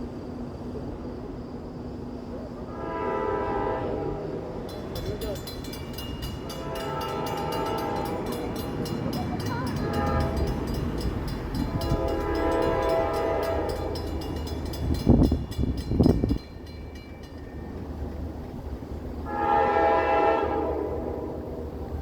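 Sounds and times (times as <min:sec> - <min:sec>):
train horn blasts: 0:02.7 - 0:04.7, 0:06.3 - 0:08.6, 0:09.6 - 0:15.3, 0:19.2 - 0:21.8
railroad crossing bell ringing: 0:04.1 - 0:20.7.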